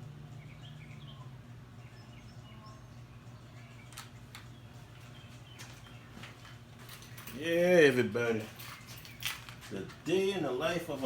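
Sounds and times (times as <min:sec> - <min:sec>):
steady low hum: 0:00.0 - 0:11.0
faint bird chirps: 0:00.4 - 0:06.2.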